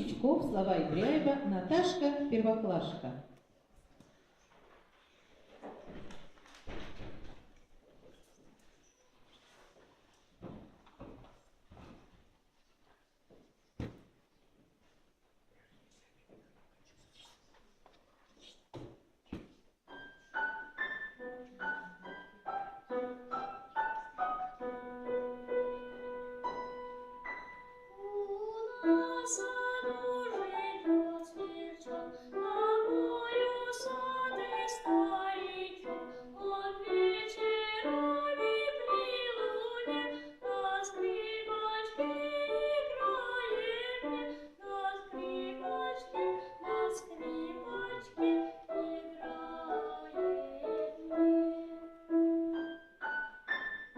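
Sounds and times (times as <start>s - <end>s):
piano chords: 19.9s - 53.9s
child singing: 27.9s - 52.0s.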